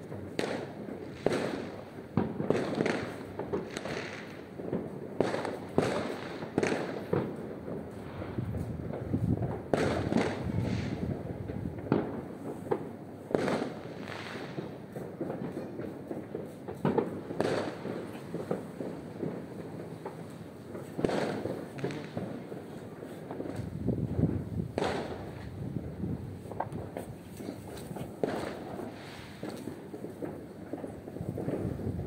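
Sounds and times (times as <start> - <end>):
fireworks bangs and booms: 0.0 - 32.0
fireworks crackling: 0.0 - 32.0.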